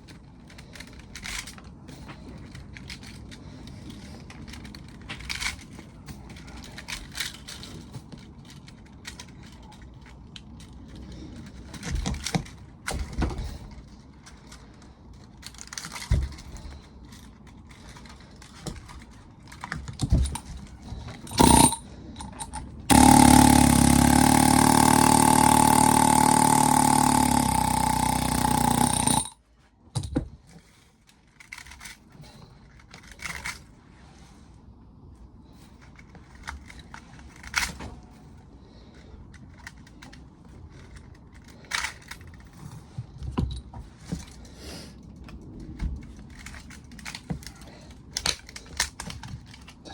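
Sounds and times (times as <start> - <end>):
metal parts clinking: 0.0 - 29.4, 39.3 - 42.7
pneumatic air hammer: 21.2 - 29.4.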